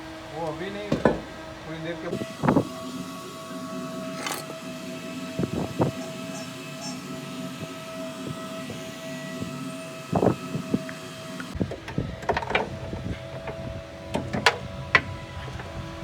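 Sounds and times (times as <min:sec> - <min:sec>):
steady background hum: 0:00.0 - 0:16.0
tools and metal parts clinking: 0:04.1 - 0:04.6.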